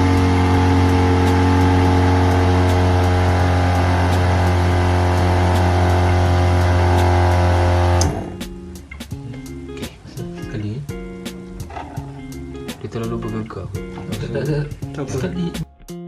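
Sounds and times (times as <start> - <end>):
small electric motor humming: 0.0 - 8.4.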